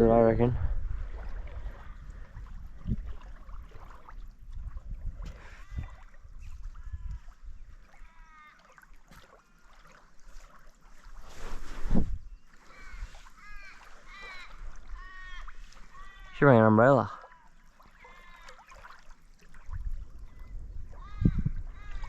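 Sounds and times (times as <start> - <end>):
wind rumble on microphone: 0.0 - 7.8, 11.3 - 13.2, 19.6 - 22.0.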